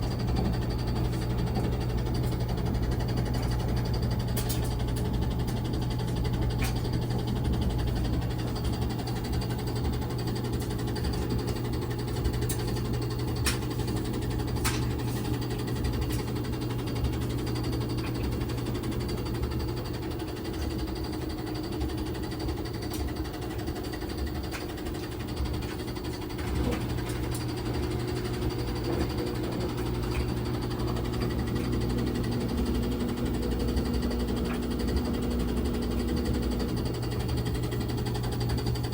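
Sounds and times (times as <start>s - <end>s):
washing machine humming: 0.0s - 38.9s.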